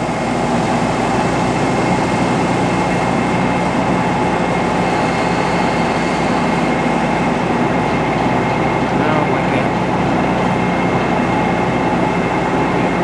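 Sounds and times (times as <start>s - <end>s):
high machine whine: 0.0s - 13.0s
metal lathe running: 0.0s - 13.0s.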